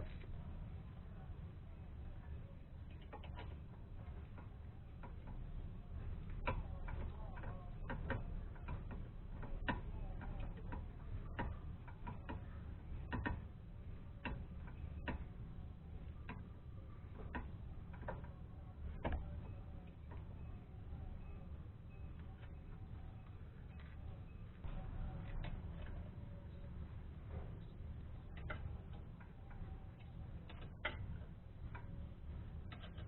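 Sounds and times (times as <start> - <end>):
low background hum: 0.0 - 33.0
light clicks and knocks: 2.8 - 13.6, 16.0 - 20.5, 23.2 - 33.0.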